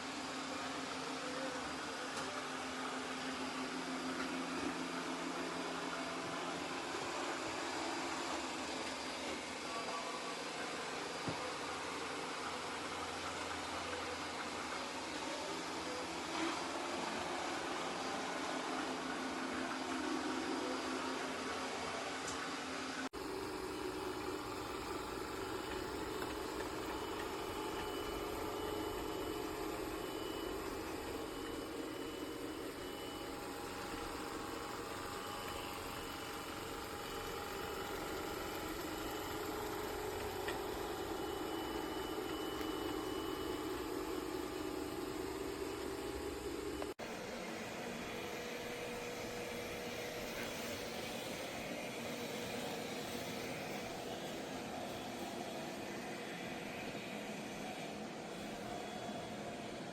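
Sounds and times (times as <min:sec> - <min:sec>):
robot vacuum humming: 0:23.2 - 0:59.9.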